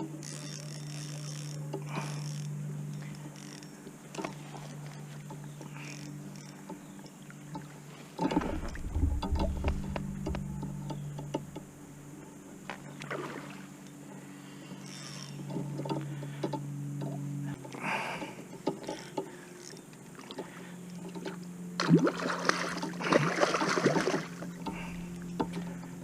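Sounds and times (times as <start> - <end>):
water sounds: 0.0 - 16.4, 17.4 - 26.0
steady low hum: 0.0 - 26.0
low rumble: 8.2 - 12.9, 24.7 - 26.0.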